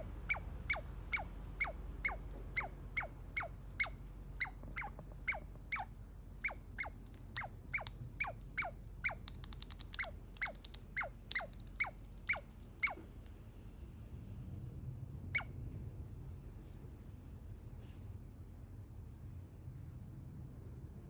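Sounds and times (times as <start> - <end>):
baby squirrel squeaking: 0.0 - 13.2, 15.3 - 15.6.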